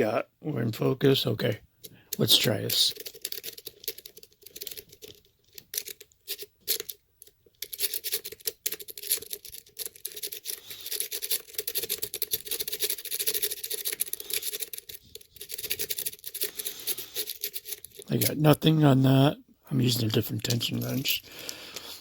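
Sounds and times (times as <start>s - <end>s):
lock pick scratching and clicking: 1.8s - 18.3s.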